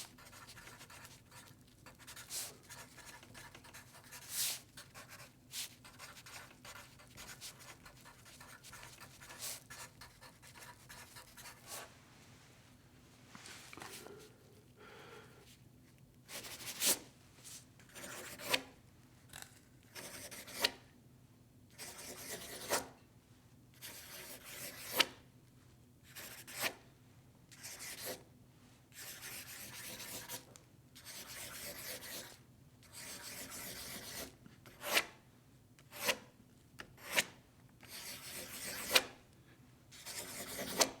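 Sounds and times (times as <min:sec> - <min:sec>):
pencil writing on paper: 0:00.1 - 0:11.9, 0:19.9 - 0:20.7, 0:21.8 - 0:22.8, 0:26.1 - 0:26.7, 0:29.0 - 0:30.4, 0:31.0 - 0:35.0, 0:40.0 - 0:40.8.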